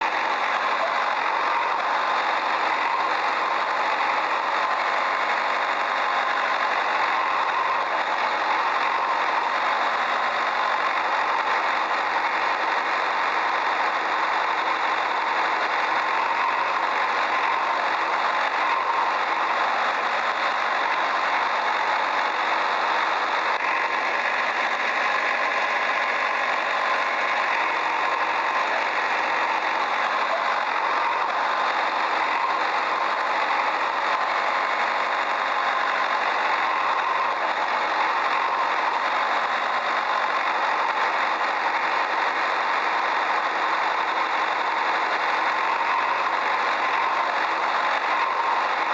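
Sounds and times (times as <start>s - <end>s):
engine idling: 0.0s - 48.9s.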